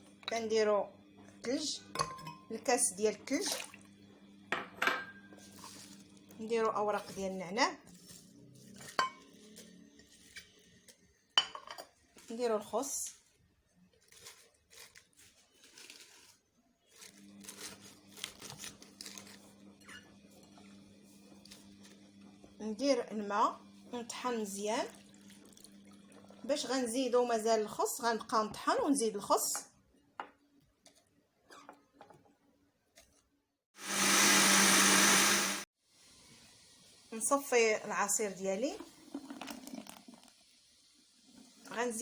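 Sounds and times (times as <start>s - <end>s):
lettuce leaves rustling and crinkling: 5.4s - 6.0s, 13.8s - 19.5s
electric blender running: 33.8s - 35.7s.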